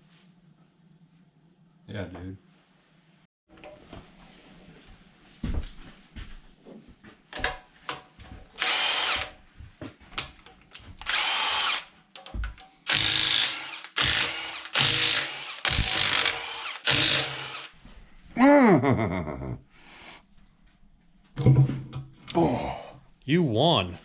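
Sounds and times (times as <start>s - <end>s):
power drill motor whine: 8.6s - 9.4s, 11.0s - 11.9s, 12.9s - 17.7s
clicks and clatter of parts: 10.2s - 13.2s.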